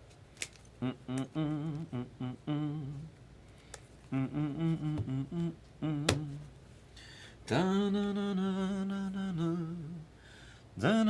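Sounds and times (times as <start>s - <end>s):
man humming: 0.8s - 3.1s, 4.1s - 6.5s.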